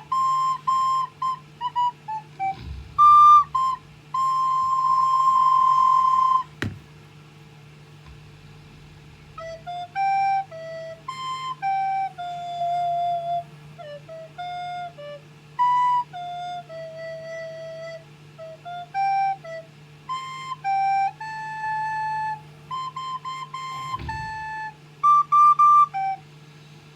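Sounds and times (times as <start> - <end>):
child playing recorder: 0.0 - 6.8, 9.2 - 26.4
sharp knock: 2.4 - 5.0, 6.6 - 7.0.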